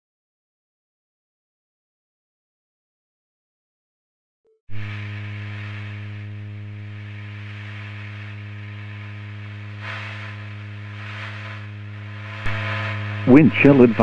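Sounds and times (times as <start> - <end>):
electrical hum with hiss: 4.7 - 14.0.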